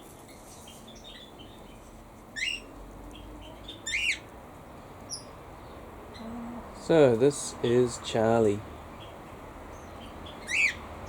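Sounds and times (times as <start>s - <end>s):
cockatiel whistled calls: 10.4s - 10.8s.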